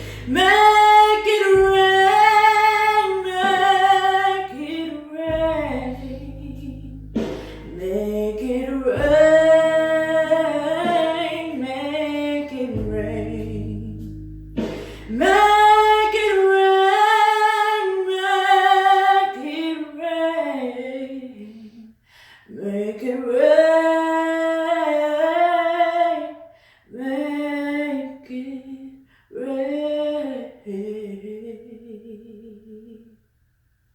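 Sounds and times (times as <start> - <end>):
low backing accompaniment: 0.0 - 4.7, 5.3 - 16.9
woman singing slow song: 0.0 - 33.2.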